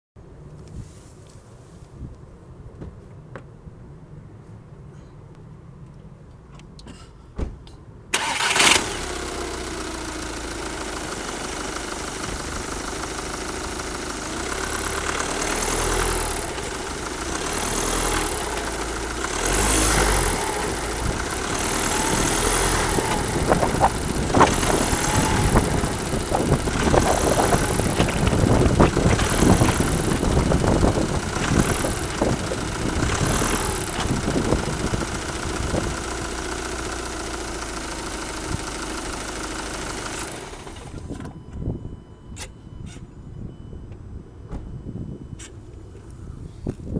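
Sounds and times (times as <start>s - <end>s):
car engine starting and revving: 8.1s - 41.2s.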